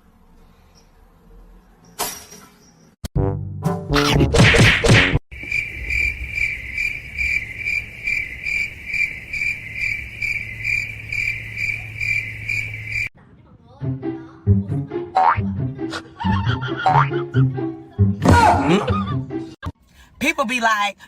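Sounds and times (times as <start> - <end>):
cricket chirping: 5.3 - 13.1.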